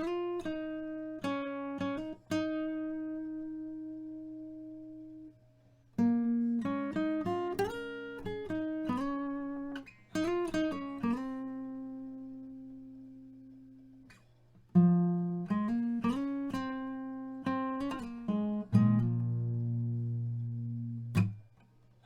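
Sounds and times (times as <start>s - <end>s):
plucked guitar notes: 14.8s - 21.5s.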